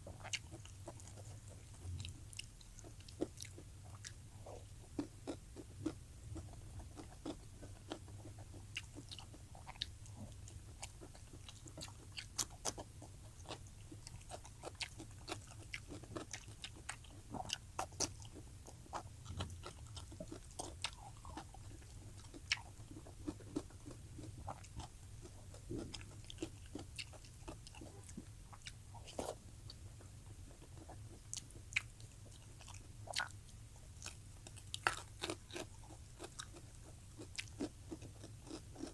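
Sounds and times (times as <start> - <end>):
chewing and biting food: 0.0 - 38.9
low steady hum: 0.0 - 38.9
food crunches: 34.0 - 36.6, 37.2 - 38.9.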